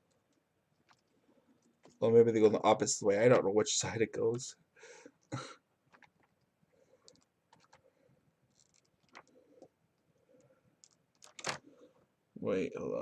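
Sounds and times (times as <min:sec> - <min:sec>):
plastic keyboard parts clicking: 0:10.8 - 0:11.6.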